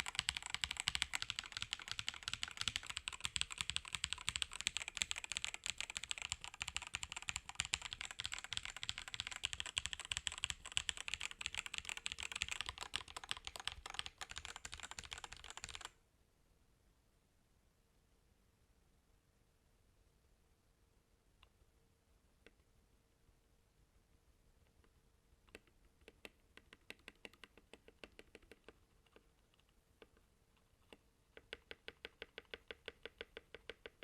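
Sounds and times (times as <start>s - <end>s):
mechanical keyboard typing: 0.0s - 15.9s, 25.5s - 29.7s, 30.8s - 34.0s.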